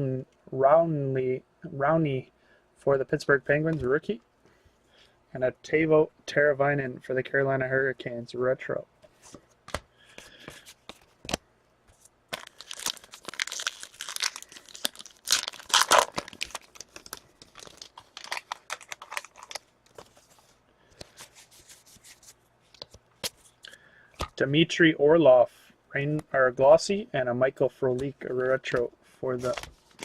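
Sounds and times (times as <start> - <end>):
wrapper tearing and crinkling: 12.3 - 20.1.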